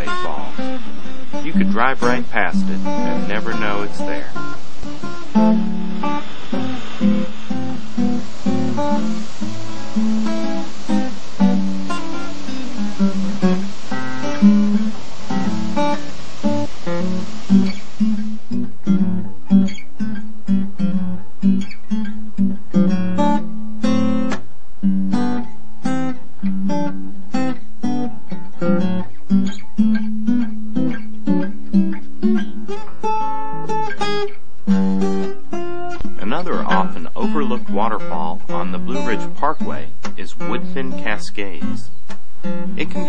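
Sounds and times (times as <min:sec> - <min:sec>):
hiss: 0:00.0 - 0:19.0
acoustic guitar strummed and picked: 0:00.0 - 0:43.0.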